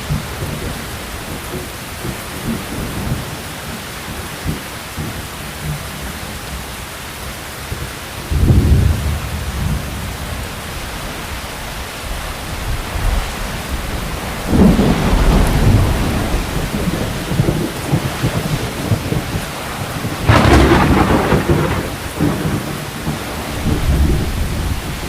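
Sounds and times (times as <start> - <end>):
heavy rain falling: 0.0 - 25.0
low thunder rumbles: 7.7 - 25.0.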